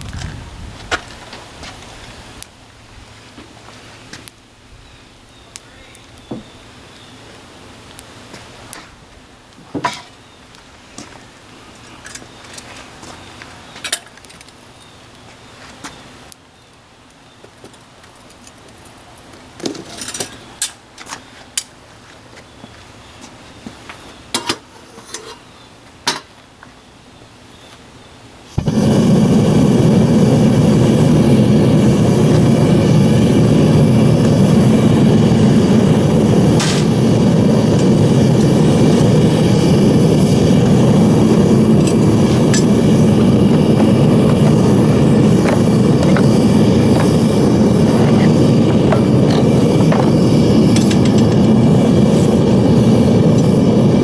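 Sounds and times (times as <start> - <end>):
furnace burner and blower roaring: 28.5 - 54.0.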